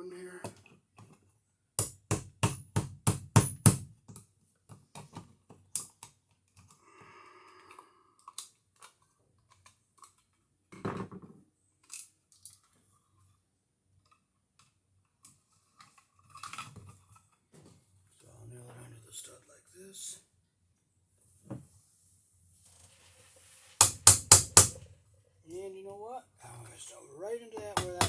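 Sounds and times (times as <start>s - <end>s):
dull knock: 23.8s - 24.8s
sharp tapping strikes: 23.8s - 24.8s, 27.7s - 28.0s.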